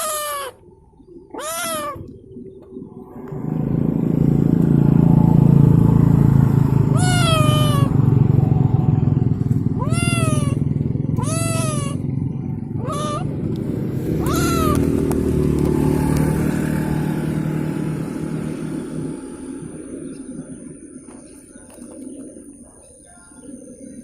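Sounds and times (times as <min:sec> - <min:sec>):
kitten meowing: 0:00.0 - 0:00.6, 0:01.3 - 0:02.1, 0:06.9 - 0:08.0, 0:09.7 - 0:12.0, 0:12.8 - 0:13.3, 0:14.2 - 0:15.0
engine rumbling: 0:00.0 - 0:24.0.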